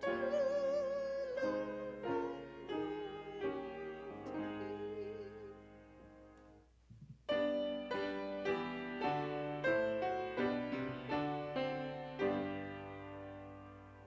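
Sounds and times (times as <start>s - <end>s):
person singing hymn: 0.0s - 6.3s
piano chords: 0.0s - 14.0s.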